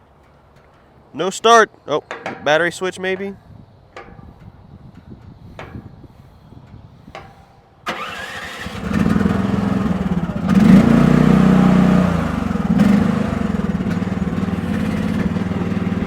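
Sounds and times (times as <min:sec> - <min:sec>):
electric starter cranking engine: 0:07.9 - 0:16.0
excavator engine revving: 0:07.9 - 0:16.0.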